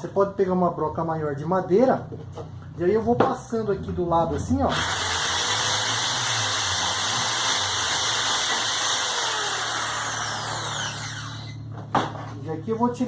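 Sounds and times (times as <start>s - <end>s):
electric drill grinding bamboo: 4.6s - 11.6s.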